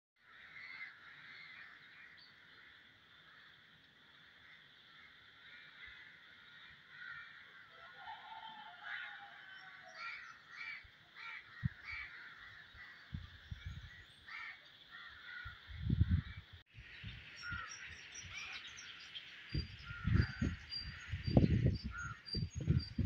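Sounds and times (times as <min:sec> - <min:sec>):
birds calling harshly: 0:00.2 - 0:23.0.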